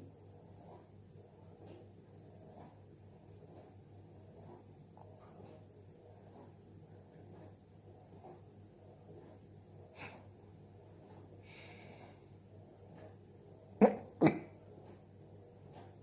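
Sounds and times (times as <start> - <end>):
soft breath: 9.8 - 13.2
person hiccuping: 13.8 - 14.5.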